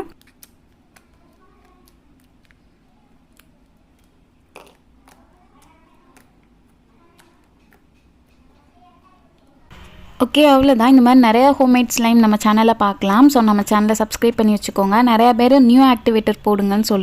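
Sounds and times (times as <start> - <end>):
slime squelch: 0.1 - 7.9.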